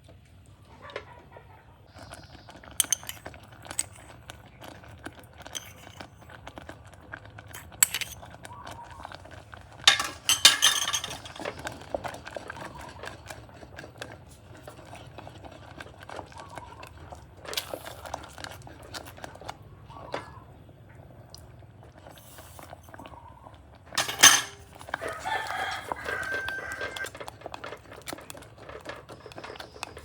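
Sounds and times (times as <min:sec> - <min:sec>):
utensils and dishes clinking: 0:02.8 - 0:04.0, 0:05.5 - 0:06.1, 0:07.6 - 0:08.3, 0:09.8 - 0:11.7, 0:24.0 - 0:27.1.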